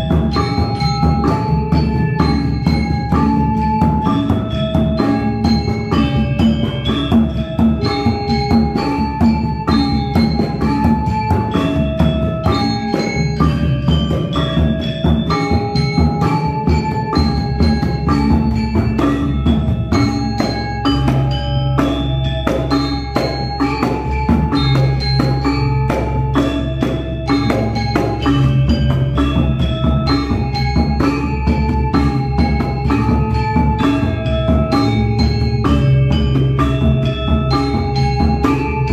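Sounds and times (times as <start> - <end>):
gamelan metallophones ringing: 0.0 - 38.9.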